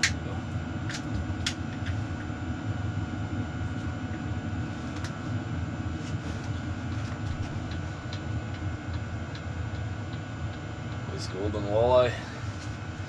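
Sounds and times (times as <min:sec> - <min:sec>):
low machine hum: 0:00.0 - 0:13.0.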